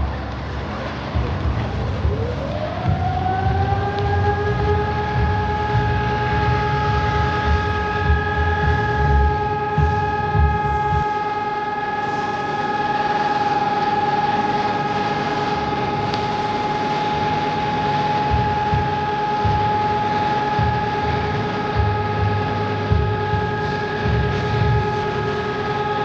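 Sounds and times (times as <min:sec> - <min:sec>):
low rumbling: 0:00.0 - 0:11.6, 0:15.9 - 0:25.9
electronic siren steady tone: 0:01.1 - 0:26.0.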